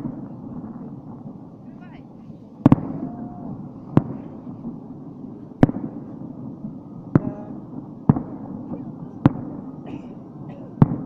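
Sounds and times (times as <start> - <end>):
low rumble of bursts: 0.0 - 11.0
sharp firework bangs: 0.0 - 11.0.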